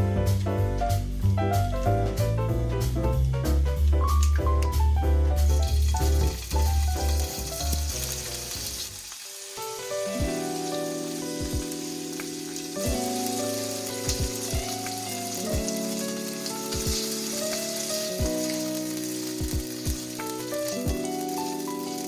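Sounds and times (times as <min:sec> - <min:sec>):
background music of held chords: 0:00.0 - 0:08.9, 0:09.6 - 0:22.0
food sizzling in a frying pan: 0:05.4 - 0:22.0.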